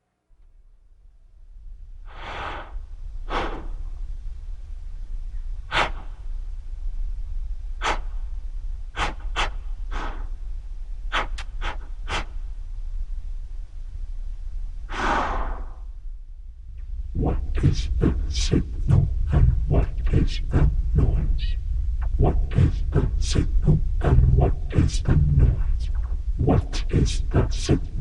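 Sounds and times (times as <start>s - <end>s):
low steady drone: 0.0s - 28.0s
breathy gasps and exhales: 2.1s - 3.8s, 9.0s - 10.3s.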